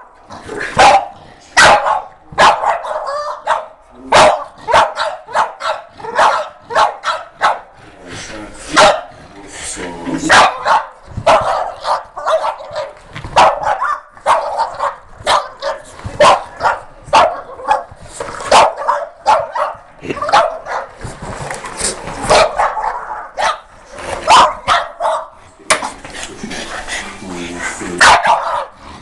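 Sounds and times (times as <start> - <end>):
dog barking and yipping: 0.8 - 7.7, 8.8 - 9.1, 10.2 - 21.0, 22.3 - 25.4, 28.0 - 28.8.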